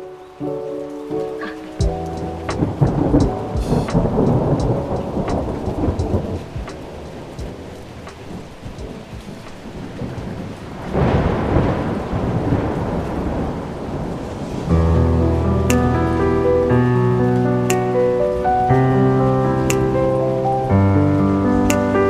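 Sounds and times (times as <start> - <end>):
steady rainfall: 0.0 - 22.0
thunder rumbling: 0.0 - 22.0
raindrop clicks: 0.4 - 13.5, 17.3 - 18.4, 19.6 - 20.3, 21.6 - 22.0.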